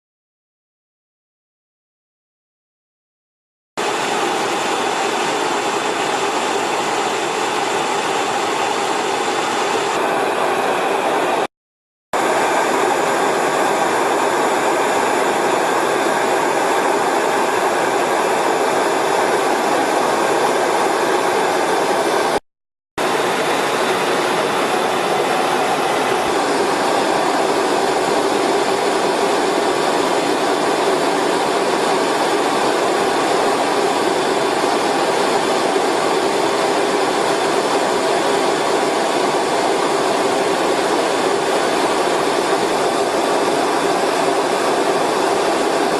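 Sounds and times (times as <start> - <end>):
jet engines rushing: 3.8 - 11.5, 12.2 - 22.4, 23.0 - 45.9
thin high whine: 23.0 - 45.9.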